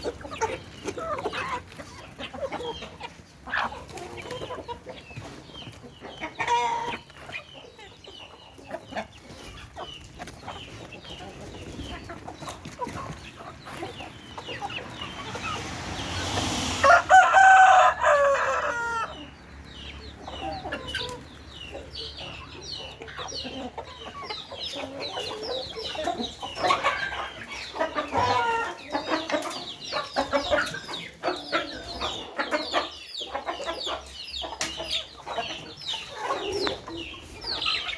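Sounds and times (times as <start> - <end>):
chickens clucking: 0.0 - 37.9
rooster crowing: 16.5 - 19.2.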